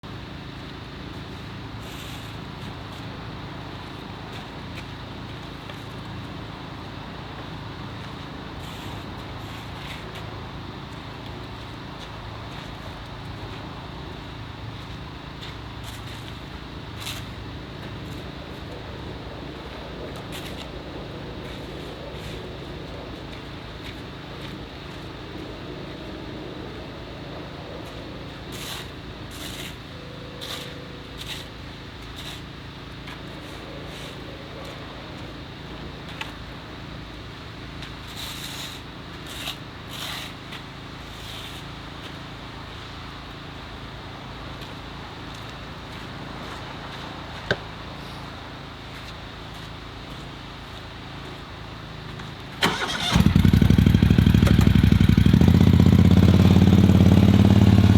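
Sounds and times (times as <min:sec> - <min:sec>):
engine running at low level: 0:00.0 - 0:57.9
loud engine running: 0:52.6 - 0:57.9.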